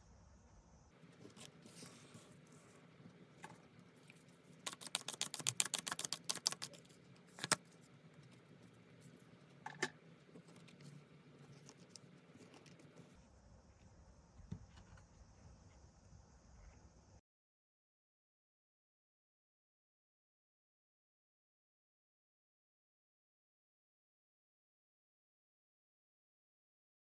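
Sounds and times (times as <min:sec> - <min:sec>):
cards being shuffled: 0:04.6 - 0:07.7.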